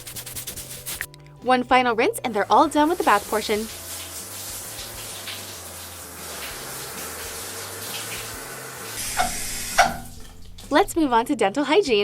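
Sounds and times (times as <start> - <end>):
running water pouring: 2.6 - 11.2.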